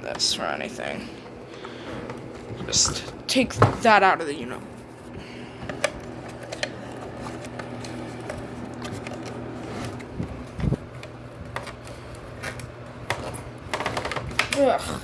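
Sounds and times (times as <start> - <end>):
steady low hum: 0.0 - 15.0
plastic clicks and knocks: 10.0 - 14.6.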